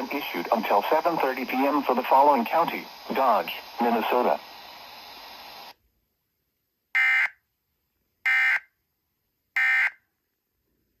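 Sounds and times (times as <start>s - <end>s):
digital data tone bursts: 0.0s - 5.5s
broadcast hiss: 0.0s - 5.8s.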